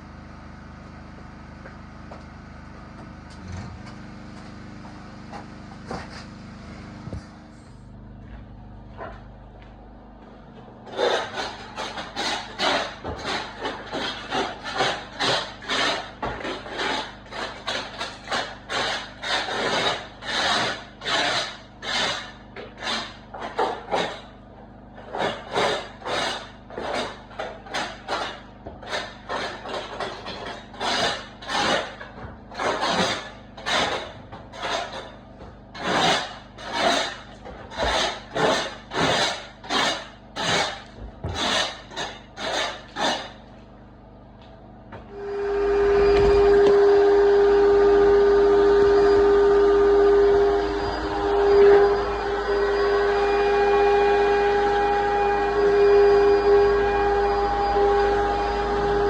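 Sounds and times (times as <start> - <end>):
hand tool rasping on hard surface: 10.8 - 43.6.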